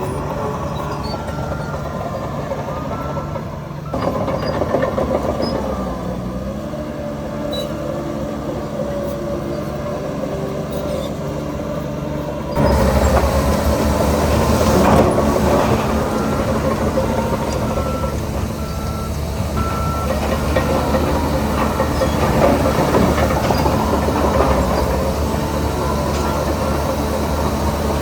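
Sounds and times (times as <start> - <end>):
heavy machinery diesel engines: 0.0 - 28.0.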